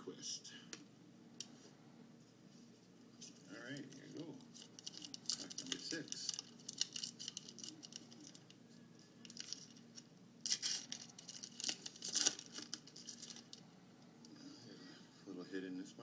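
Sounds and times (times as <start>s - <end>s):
foil wrapper tearing and crinkling: 4.6s - 8.5s, 9.2s - 13.6s.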